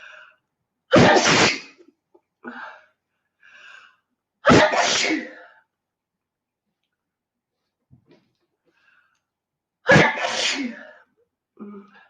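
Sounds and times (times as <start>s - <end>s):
woman sneezing: 0.9s - 1.8s, 4.4s - 5.4s, 9.9s - 11.0s.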